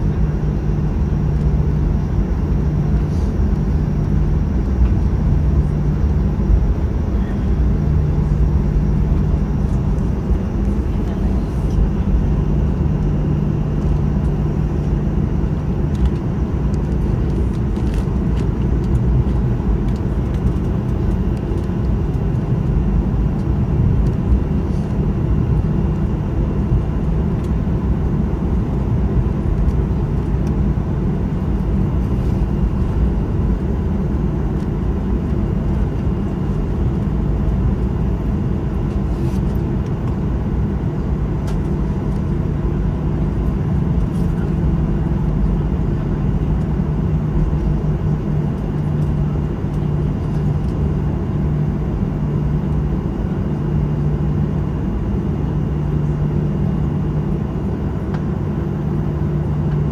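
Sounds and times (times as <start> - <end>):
aircraft cabin engine hum: 0.0 - 59.9.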